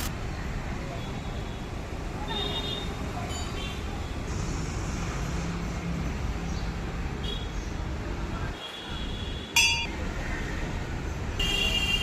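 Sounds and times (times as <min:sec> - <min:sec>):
road traffic rumble: 0:00.0 - 0:12.0
metal temple bell strike: 0:09.6 - 0:10.0.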